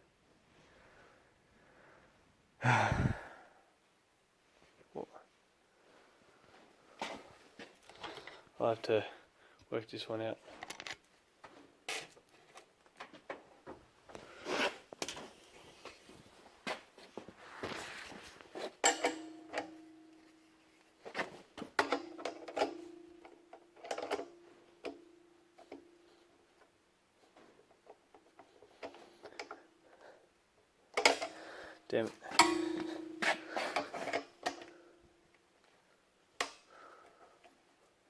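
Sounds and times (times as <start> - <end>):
steady tone: 32.3 - 33.8.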